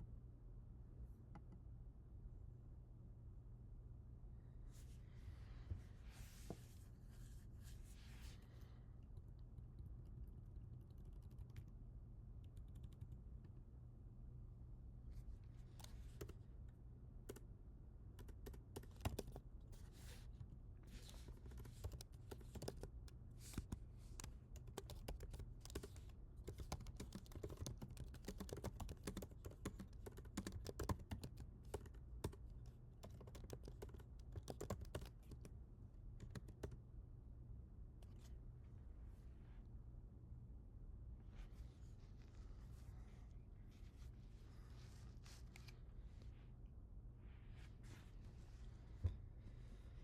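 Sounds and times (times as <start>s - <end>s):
faint low hum: 0.0s - 50.0s
keyboard typing: 10.8s - 11.7s, 12.4s - 13.2s, 18.2s - 19.4s, 21.0s - 35.5s, 36.2s - 36.8s.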